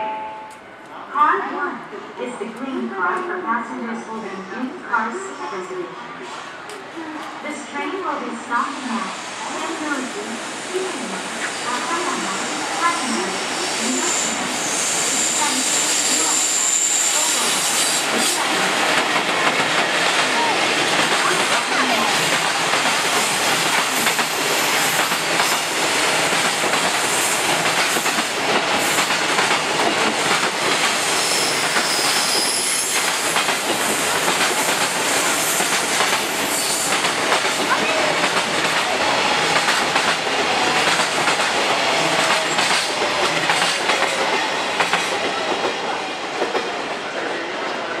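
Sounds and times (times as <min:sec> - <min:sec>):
high wheel squeal: 0:31.1 - 0:33.4.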